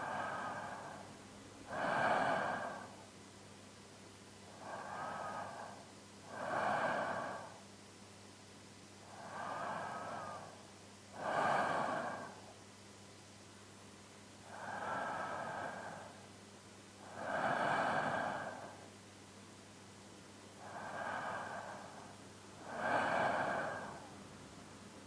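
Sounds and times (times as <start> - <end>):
man breathing deeply in sleep: 0.0 - 3.1, 4.4 - 7.6, 9.0 - 12.6, 14.4 - 16.3, 17.0 - 18.9, 20.6 - 24.2.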